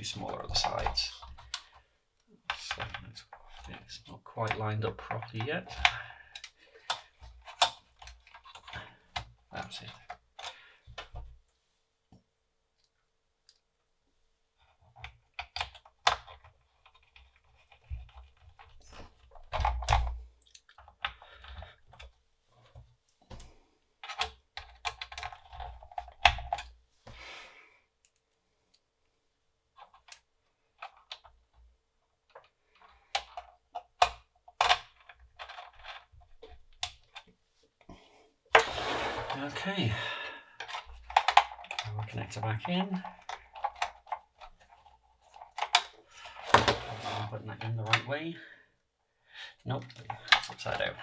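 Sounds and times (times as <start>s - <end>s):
metal case clicks and scrapes: 38.5s - 39.7s, 40.6s - 42.0s, 42.6s - 48.0s.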